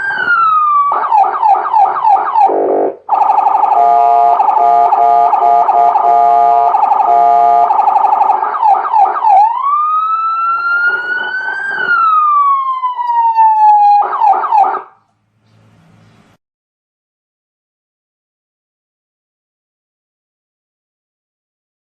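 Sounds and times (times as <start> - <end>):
electronic siren yelping and wailing: 0.0 - 15.0.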